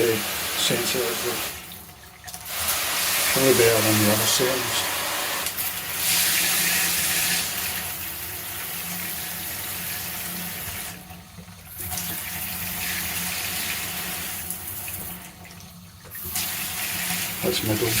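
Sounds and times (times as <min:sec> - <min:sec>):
shower head spraying water: 0:00.0 - 0:01.7, 0:02.4 - 0:07.9, 0:16.3 - 0:18.0.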